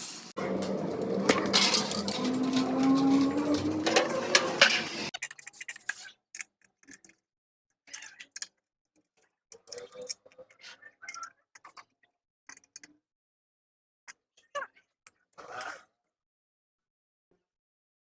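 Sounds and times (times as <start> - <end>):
running sound with rising tone: 0.4 - 5.1.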